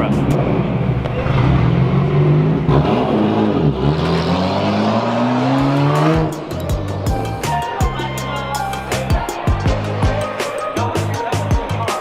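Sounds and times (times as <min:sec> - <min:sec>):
car engine revving loudly: 0:00.4 - 0:07.1.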